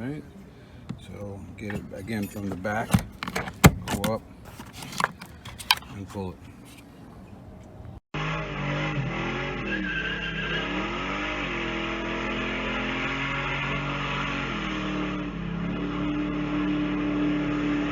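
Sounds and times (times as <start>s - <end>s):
car engine revving: 8.2s - 17.9s.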